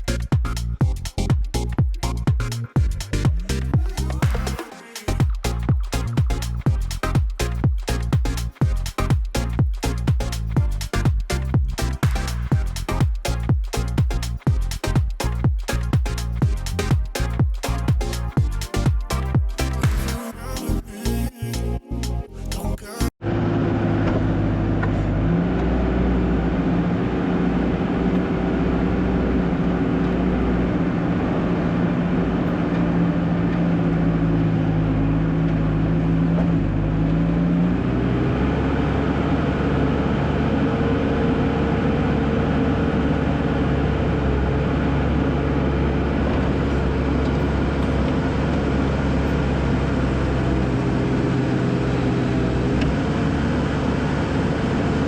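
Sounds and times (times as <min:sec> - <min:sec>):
skid steer engine running: 0:23.2 - 0:55.0.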